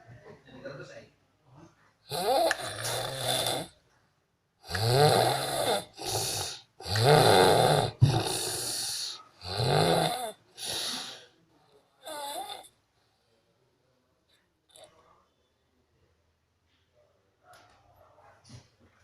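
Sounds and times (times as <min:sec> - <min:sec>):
person snoring: 0:02.1 - 0:03.8, 0:04.6 - 0:11.3, 0:12.0 - 0:12.7.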